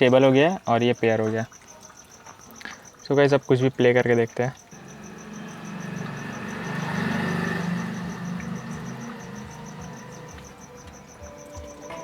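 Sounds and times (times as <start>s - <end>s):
crickets chirping: 0.0s - 12.0s
low vehicle engine hum: 4.7s - 12.0s.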